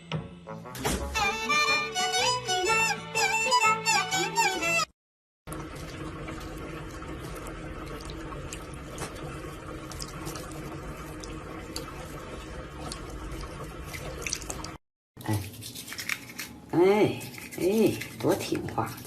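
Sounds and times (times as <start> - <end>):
water dripping and splashing: 5.5 - 16.5
water running: 5.5 - 19.0.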